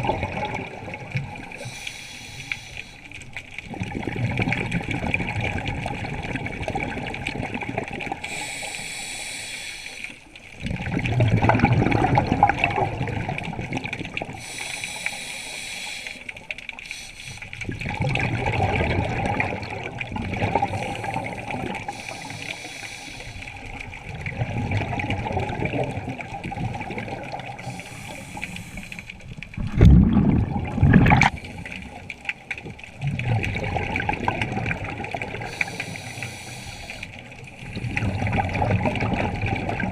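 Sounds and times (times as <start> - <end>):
exhaled bubbles bursting: 0.0 - 1.6, 3.5 - 8.4, 10.6 - 14.5, 17.6 - 22.3, 23.5 - 36.2, 37.1 - 39.9
regulator inhale hiss: 1.5 - 3.3, 8.2 - 10.3, 14.4 - 17.6, 20.7 - 23.7, 27.6 - 29.2, 35.4 - 37.2.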